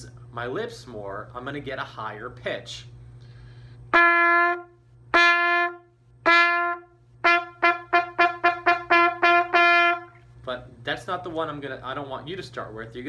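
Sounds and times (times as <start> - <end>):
trumpet playing short notes: 3.9 - 10.2.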